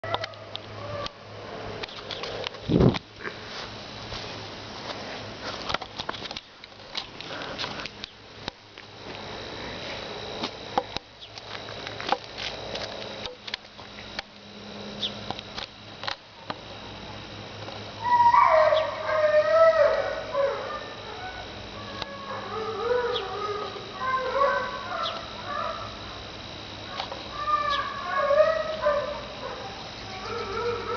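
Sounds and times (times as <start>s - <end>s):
dog whining and yowling: 18.0s - 25.9s, 27.4s - 30.9s.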